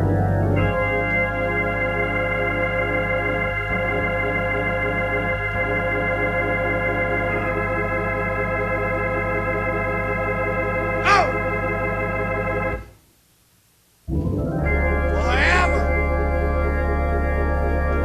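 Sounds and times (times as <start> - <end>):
organ sustained chord: 0.0 - 12.9, 14.1 - 18.0.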